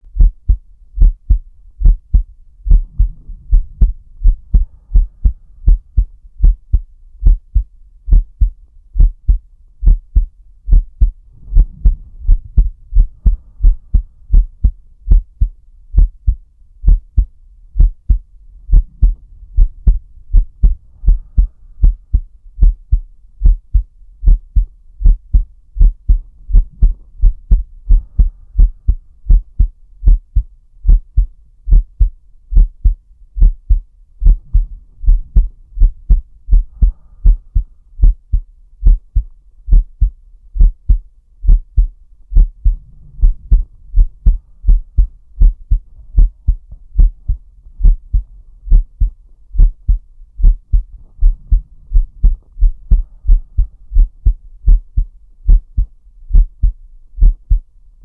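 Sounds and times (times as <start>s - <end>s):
heartbeat thumps: 0.1s - 57.7s
slow deep breaths: 1.8s - 6.2s, 11.0s - 14.8s, 18.1s - 22.8s, 26.1s - 29.4s, 34.2s - 38.4s, 41.8s - 46.7s, 49.9s - 54.3s.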